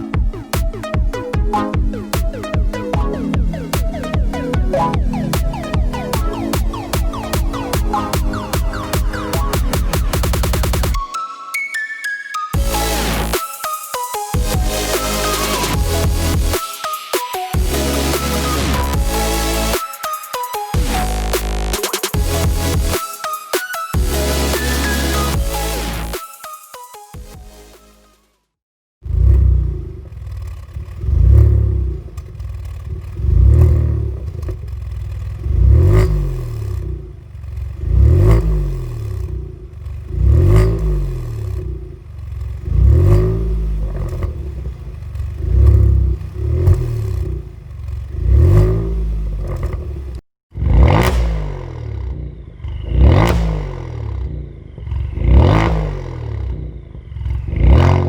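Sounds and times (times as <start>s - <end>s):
car engine revving: 29.0s - 58.0s.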